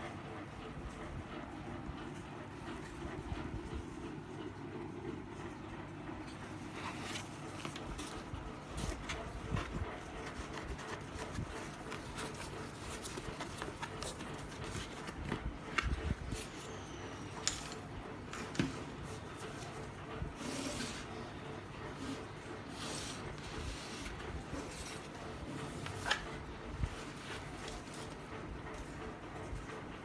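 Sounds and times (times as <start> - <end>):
objects clicking and rubbing: 6.3 - 21.2.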